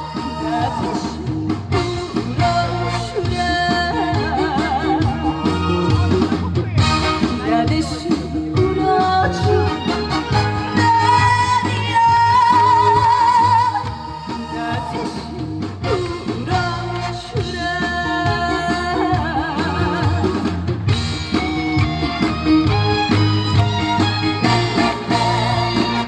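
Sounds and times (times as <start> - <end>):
woman singing with vibrato: 0.0 - 20.9, 24.4 - 26.0
band backing track: 0.0 - 26.0.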